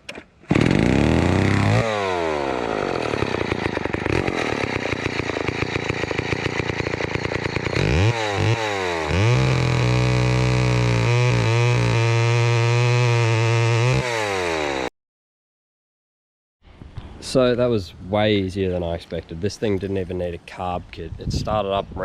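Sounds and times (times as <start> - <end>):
chainsaw engine idling and revving: 0.5 - 14.9.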